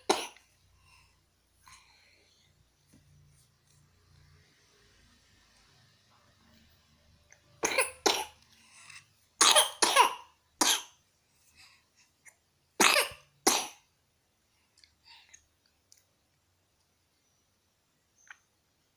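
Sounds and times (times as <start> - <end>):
faint breaths: 0.4 - 5.3, 8.4 - 9.3, 11.2 - 12.3.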